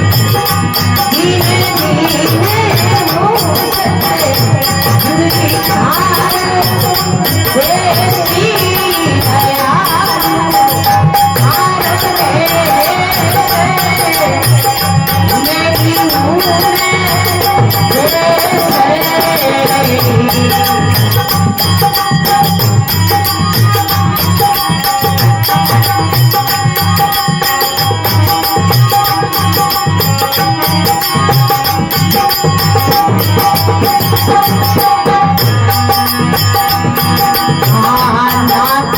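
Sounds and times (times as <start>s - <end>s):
percussion beat with jingles: 0.0s - 38.9s
woman singing: 0.9s - 21.5s, 37.5s - 38.9s.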